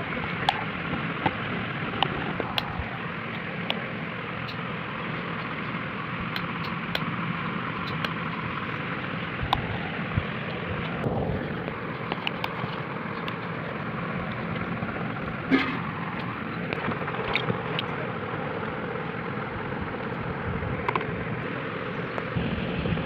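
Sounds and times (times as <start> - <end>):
steady rushing noise: 8.4 - 21.6.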